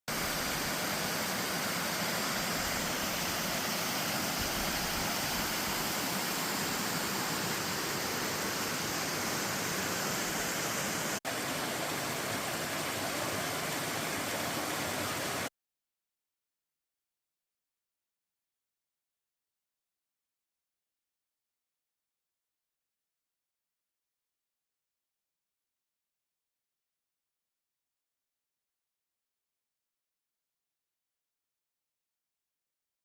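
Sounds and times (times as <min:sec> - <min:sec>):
waterfall rushing: 0:00.1 - 0:15.5.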